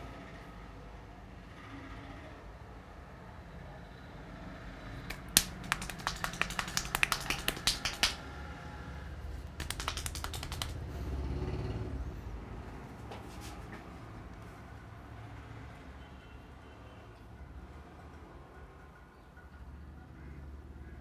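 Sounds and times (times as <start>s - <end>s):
hands tapping on head: 5.1s - 8.2s, 9.6s - 10.8s.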